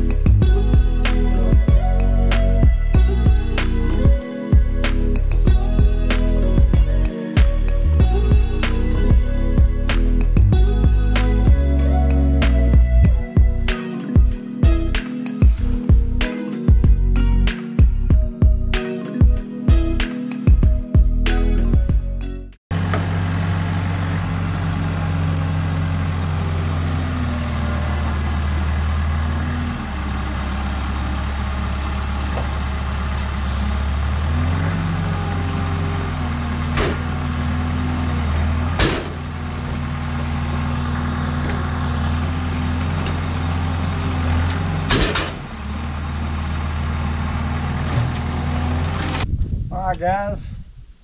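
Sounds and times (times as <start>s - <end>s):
large engine idling: 22.7s - 49.2s.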